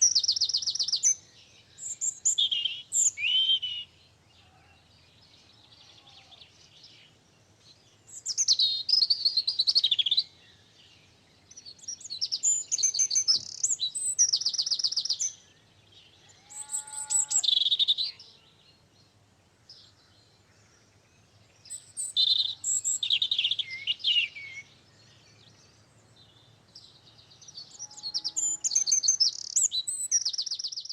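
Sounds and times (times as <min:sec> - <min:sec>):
songbird singing: 0:00.0 - 0:30.9.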